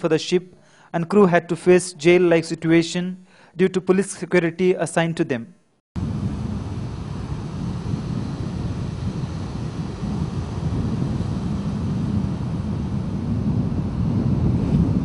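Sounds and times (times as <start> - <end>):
wind buffeting microphone: 6.0 - 15.0.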